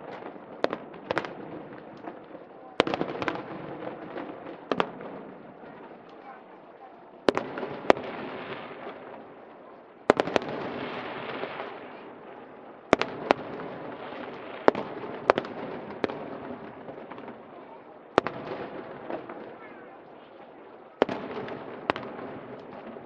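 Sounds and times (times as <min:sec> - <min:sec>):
fireworks bangs: 0:00.0 - 0:23.0
fireworks crackling hiss: 0:07.3 - 0:17.5.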